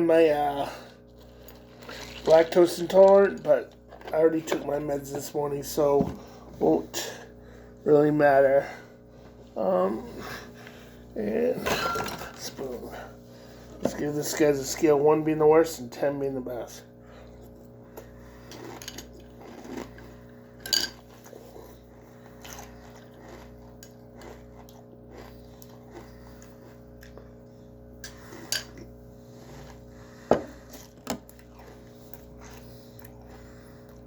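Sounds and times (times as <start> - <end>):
steady low hum: 0.0 - 34.0
cereal crunching and chewing: 0.1 - 5.9, 17.2 - 34.0.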